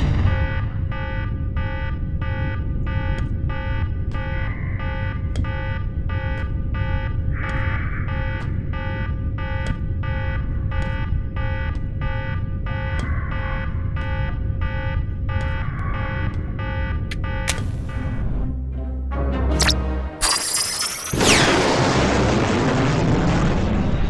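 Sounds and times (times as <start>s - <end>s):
electronic alarm beeping: 0.0s - 18.5s, 19.5s - 21.6s
steady low rumble: 0.0s - 18.9s
sharp clicks: 15.3s - 17.8s.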